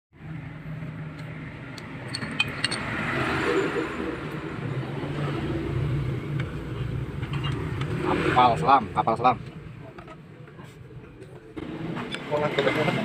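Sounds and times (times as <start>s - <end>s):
light metallic clinks: 2.1s - 2.9s.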